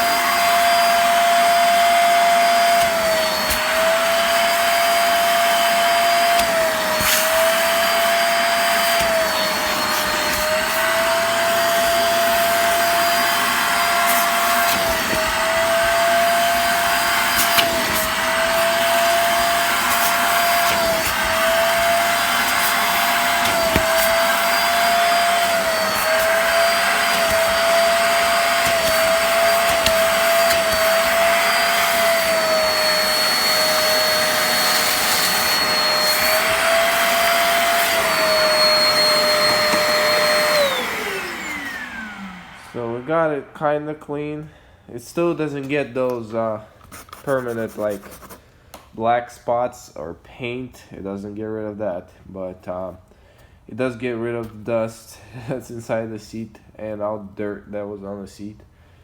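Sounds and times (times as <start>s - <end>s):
carpet cleaner suction motor whine: 0.0s - 44.4s.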